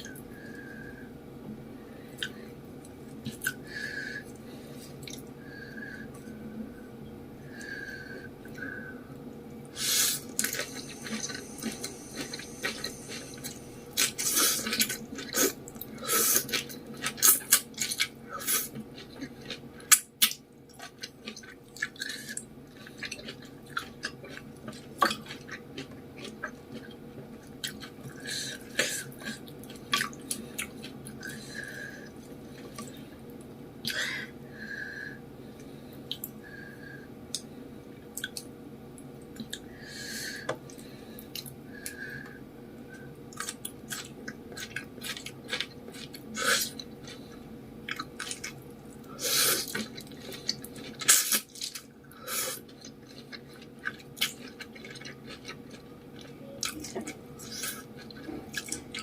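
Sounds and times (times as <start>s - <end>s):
wet chewing and mouth sounds: 4.3s - 5.4s, 10.1s - 34.0s, 37.3s - 39.7s, 42.9s - 59.0s.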